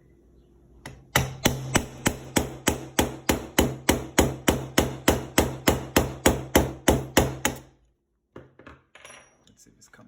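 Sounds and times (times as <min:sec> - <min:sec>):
hammer tapping pin punch: 0:00.8 - 0:07.7.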